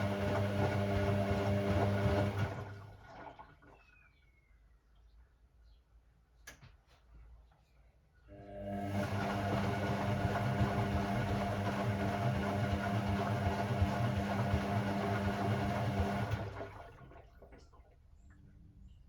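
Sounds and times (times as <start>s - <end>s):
washing machine hum: 0.0s - 4.2s, 8.3s - 18.3s.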